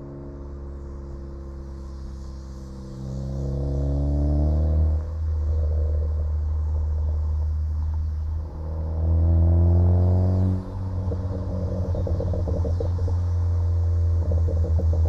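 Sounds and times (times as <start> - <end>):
car engine revving: 2.7 - 15.0
exhaust crackles and pops: 10.7 - 15.0.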